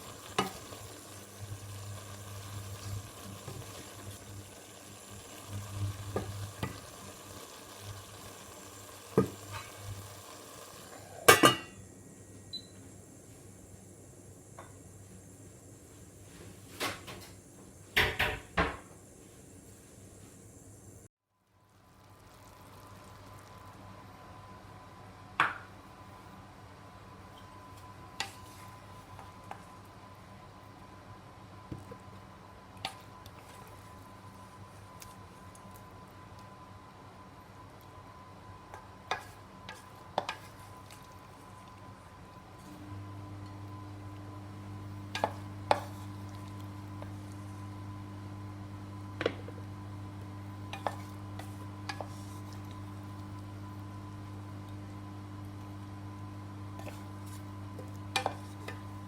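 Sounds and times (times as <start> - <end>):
meat sizzling in a pan: 0.0 - 11.8, 21.6 - 24.2
faint steady hum: 0.0 - 59.0.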